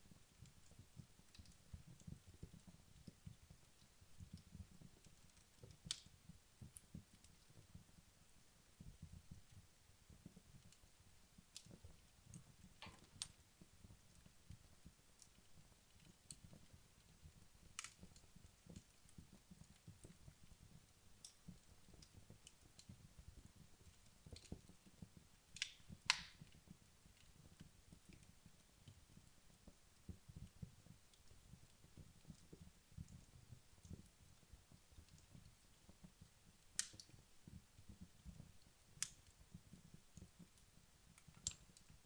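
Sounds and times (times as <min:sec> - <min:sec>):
fire crackling and popping: 0:00.0 - 0:42.0
loud wood snaps: 0:25.6 - 0:26.4, 0:36.8 - 0:37.1.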